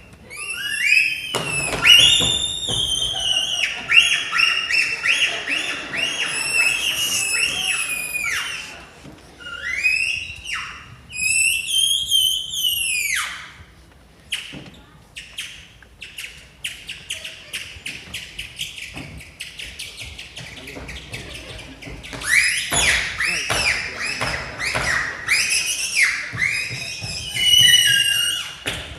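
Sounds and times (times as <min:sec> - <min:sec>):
buzzy bird-like whistle: 0:00.3 - 0:08.8, 0:09.4 - 0:13.4, 0:22.2 - 0:28.6.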